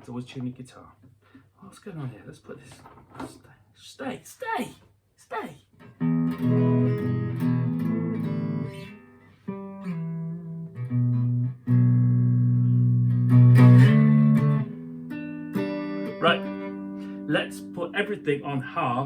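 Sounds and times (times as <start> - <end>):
clean electric guitar notes: 5.9 - 18.7.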